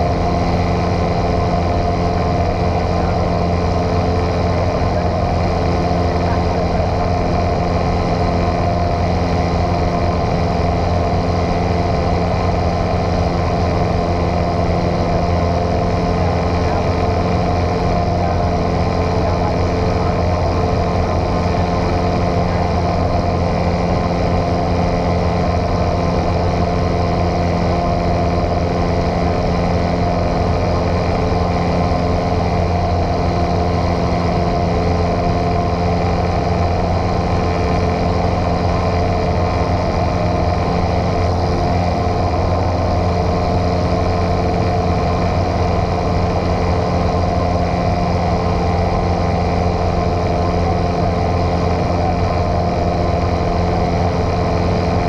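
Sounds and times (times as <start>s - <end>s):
airplane engine droning in cabin: 0.0s - 55.0s.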